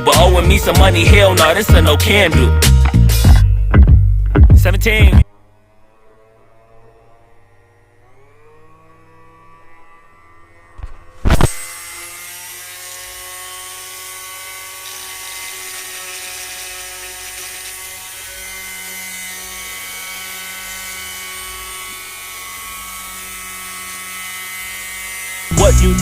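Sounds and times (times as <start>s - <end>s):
rotary tool whining: 5.2s - 26.0s.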